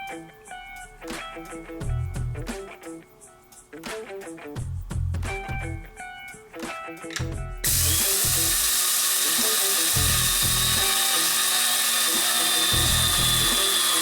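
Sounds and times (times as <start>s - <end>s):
electric spice grinder whirring: 7.6s - 14.0s.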